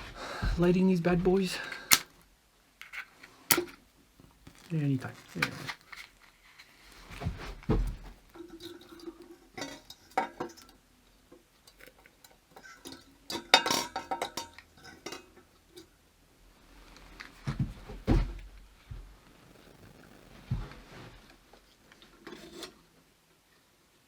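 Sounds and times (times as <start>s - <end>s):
dull thumps: 0.0s - 1.5s, 7.0s - 8.3s, 17.5s - 21.3s.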